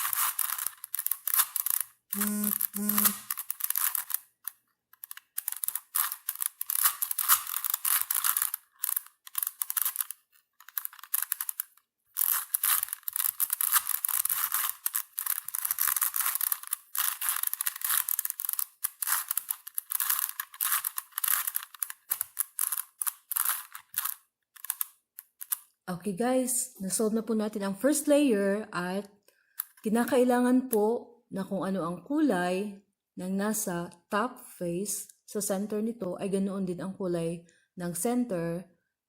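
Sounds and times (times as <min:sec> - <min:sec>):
puzzle cube clicking: 0:00.0 - 0:25.8, 0:29.6 - 0:30.3.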